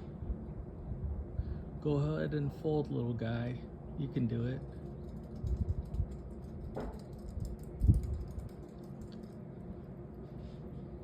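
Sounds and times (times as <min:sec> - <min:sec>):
rapid light clicking: 0:04.8 - 0:09.4.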